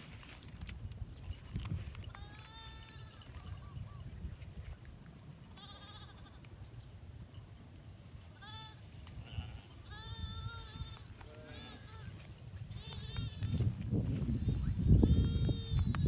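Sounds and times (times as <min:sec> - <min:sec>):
animal bleating: 0:02.1 - 0:03.6, 0:05.5 - 0:06.5, 0:08.4 - 0:16.0.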